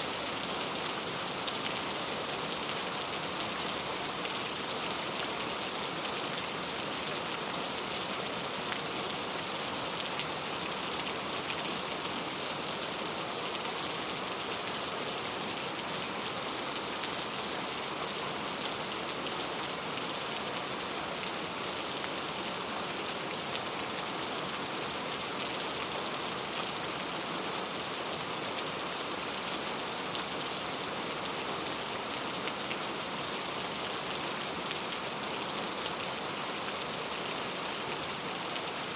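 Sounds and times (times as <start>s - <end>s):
rain falling on a road: 0.0s - 38.9s.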